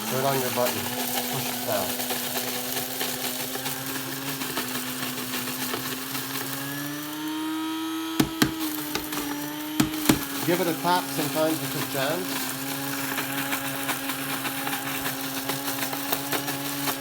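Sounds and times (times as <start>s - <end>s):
coffee grinder running: 0.0s - 17.0s
sharp knocks: 8.2s - 9.1s.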